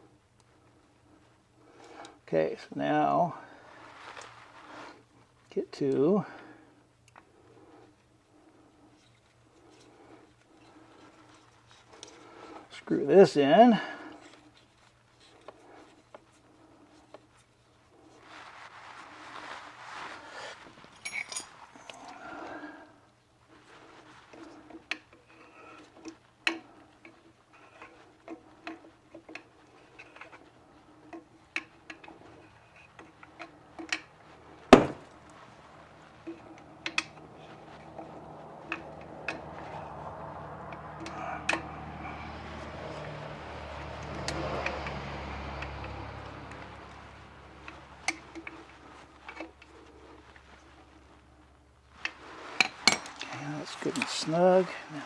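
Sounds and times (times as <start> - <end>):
sharp knock: 34.7 - 35.1.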